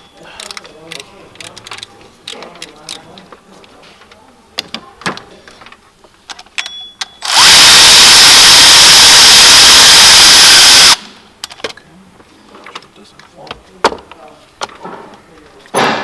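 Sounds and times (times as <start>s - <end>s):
power tool running: 7.2s - 11.0s.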